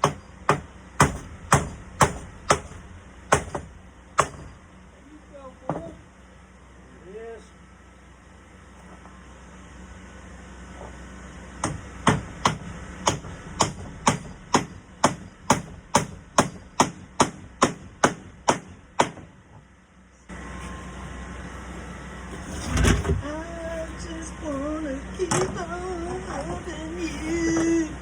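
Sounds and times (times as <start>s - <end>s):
hammer striking nails: 0.0s - 4.6s, 11.6s - 19.4s.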